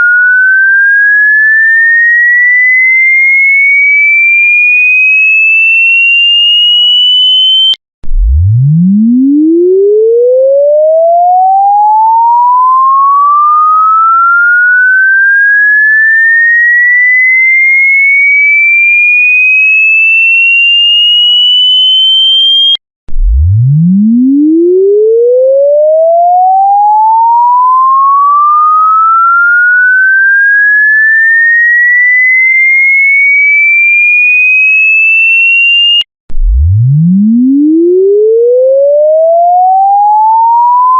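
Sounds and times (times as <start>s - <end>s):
rising sine-wave sweep tone: 6.4s - 17.8s, 20.3s - 34.0s, 34.9s - 40.9s.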